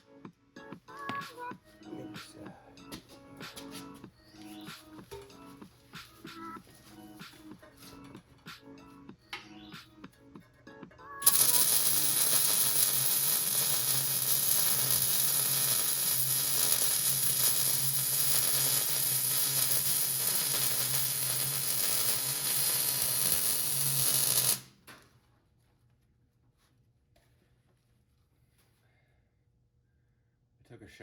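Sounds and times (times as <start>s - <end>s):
welding arc crackling sizzle: 11.2s - 24.7s.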